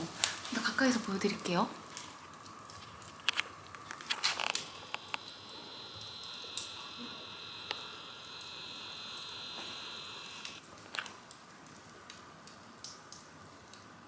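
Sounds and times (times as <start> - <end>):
wood fire popping: 0.0 - 13.0
high-pitched hiss: 3.3 - 10.7.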